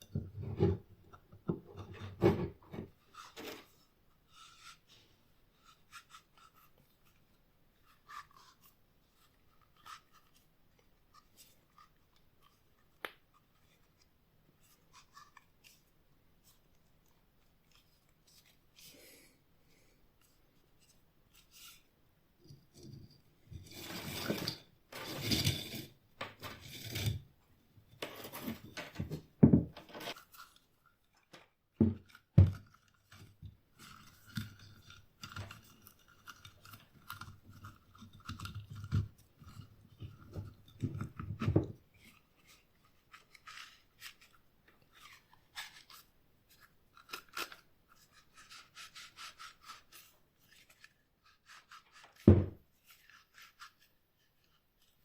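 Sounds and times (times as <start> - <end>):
scraping and rubbing on metal: 20.2 - 27.3, 27.9 - 31.3, 32.9 - 55.0.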